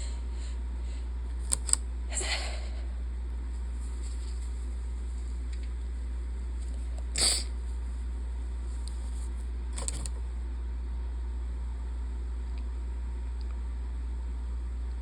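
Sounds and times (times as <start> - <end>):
low hum: 0.0 - 15.0
person sneezing loudly: 7.1 - 7.5.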